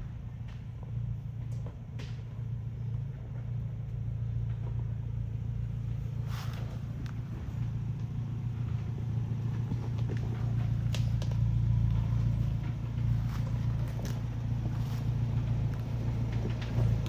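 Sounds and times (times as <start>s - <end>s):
truck engine rumbling: 0.0s - 17.0s
faint clicks and knocks: 6.6s - 17.0s.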